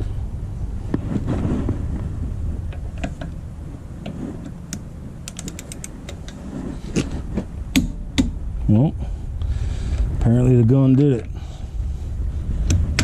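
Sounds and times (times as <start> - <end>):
torque wrench ratchet clicks: 5.3 - 6.2.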